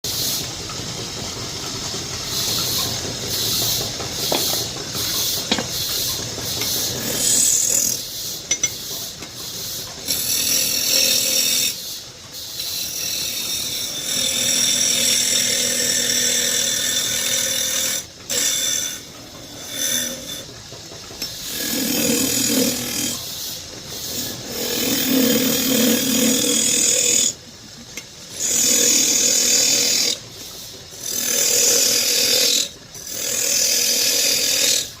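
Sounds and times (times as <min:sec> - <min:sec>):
power tool working wood: 0:21.4 - 0:23.2, 0:24.1 - 0:27.4, 0:28.3 - 0:30.2.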